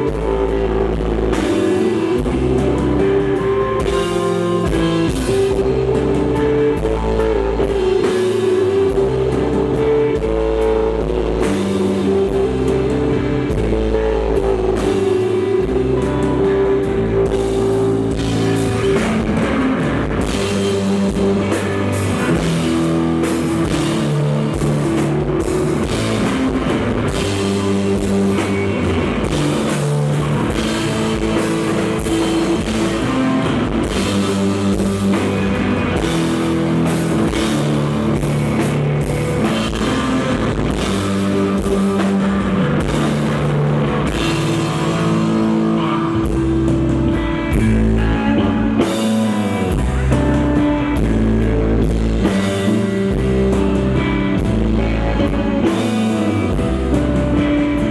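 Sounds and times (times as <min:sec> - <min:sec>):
bass guitar notes: 0:00.0 - 0:57.9
drum kit beat: 0:00.0 - 0:57.9
electric guitar: 0:00.0 - 0:57.9.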